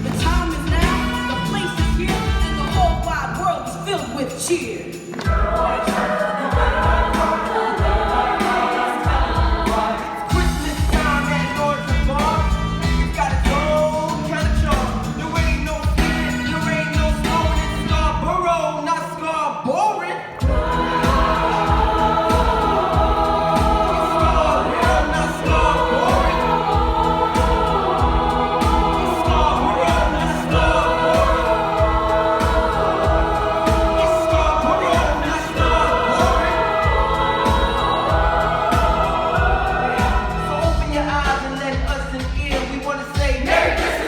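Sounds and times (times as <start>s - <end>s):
music with steady low beat: 0.0s - 3.1s, 20.4s - 42.2s
choir singing held chords: 4.9s - 14.0s, 20.1s - 42.0s, 43.2s - 44.0s.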